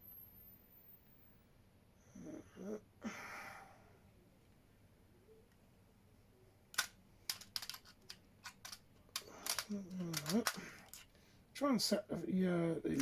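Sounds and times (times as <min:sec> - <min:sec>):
exhale: 0:02.2 - 0:04.0
sharp clicks and taps: 0:06.7 - 0:11.1.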